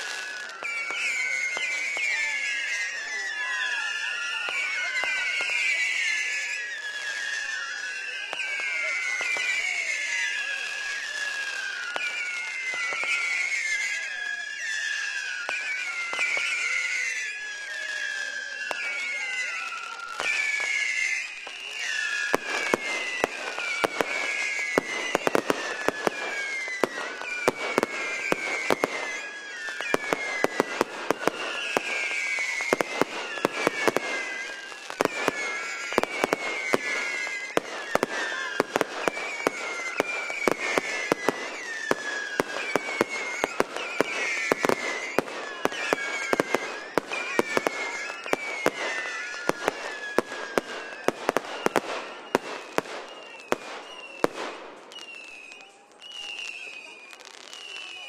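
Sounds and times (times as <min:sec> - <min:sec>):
firework whistles: 0:00.0 - 0:58.0
fireworks bangs and crackles: 0:00.0 - 0:58.0.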